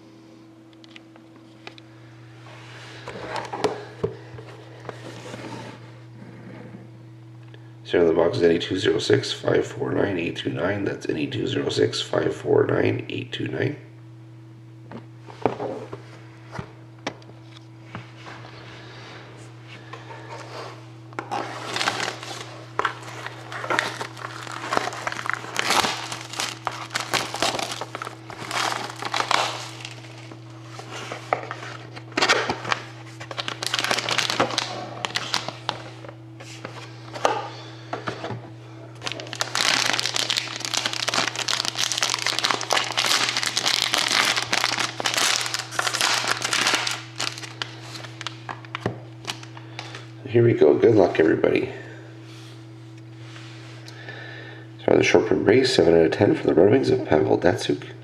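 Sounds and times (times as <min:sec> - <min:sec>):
steady low hum: 0:00.0 - 0:58.0
plastic wrapping crinkling and tearing: 0:21.2 - 0:36.0, 0:39.0 - 0:50.0.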